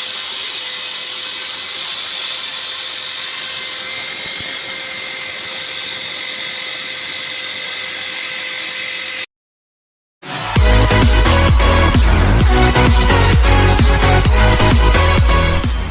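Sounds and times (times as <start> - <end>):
small electric motor whining: 0.0 - 9.3.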